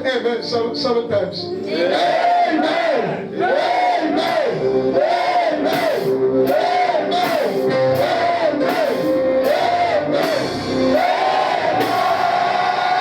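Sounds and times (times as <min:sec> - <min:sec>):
church band music: 0:00.0 - 0:13.0
drum beat and cymbal strokes: 0:04.2 - 0:13.0.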